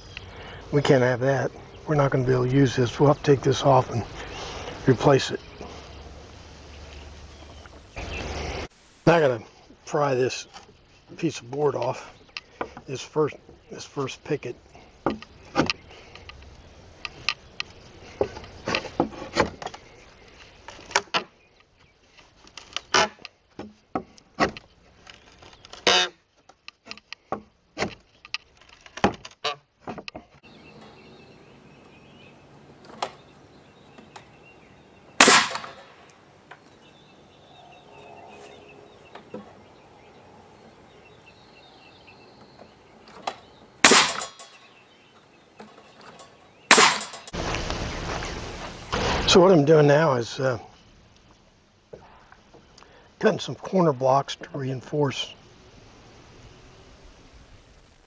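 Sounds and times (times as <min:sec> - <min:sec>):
taps knocks and cracks on wood: 0:15.0 - 0:16.4, 0:22.6 - 0:26.1, 0:26.8 - 0:30.4.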